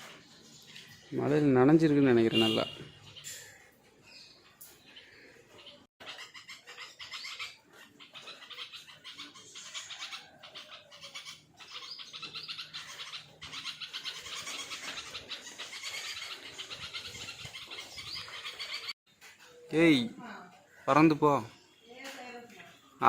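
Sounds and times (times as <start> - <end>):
bird chirping rapidly: 2.1 - 19.0.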